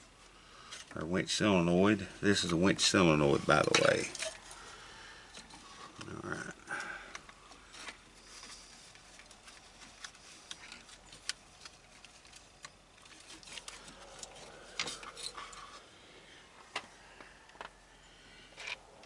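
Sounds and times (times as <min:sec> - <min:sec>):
small parts and tools rattling: 0:00.6 - 0:01.0, 0:02.3 - 0:15.9, 0:18.5 - 0:18.9.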